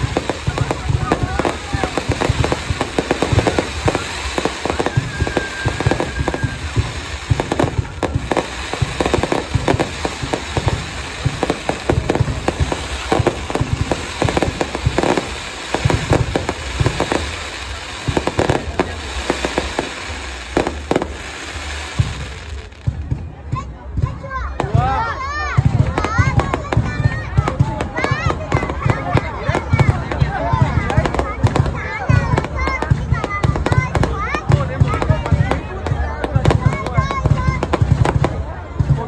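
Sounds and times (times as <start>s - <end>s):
firework whistling: 0.0s - 23.2s
fireworks bangs and crackles: 0.0s - 39.0s.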